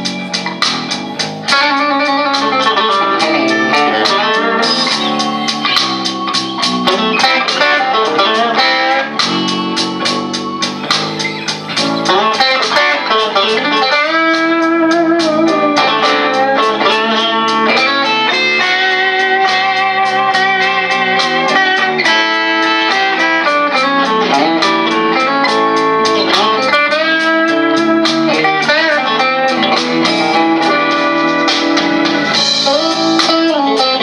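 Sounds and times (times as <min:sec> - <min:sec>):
blues backing track with drums: 0:00.0 - 0:34.0
electric guitar playing blues: 0:00.0 - 0:34.0.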